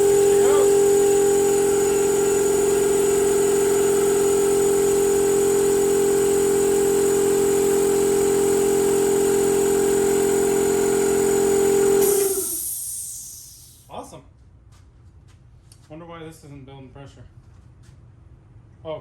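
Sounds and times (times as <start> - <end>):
air compressor humming: 0.0 - 14.0.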